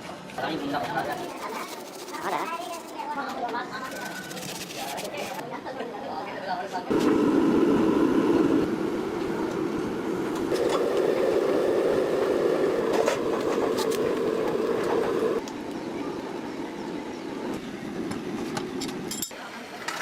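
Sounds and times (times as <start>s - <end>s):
power tool running: 10.4s - 15.4s.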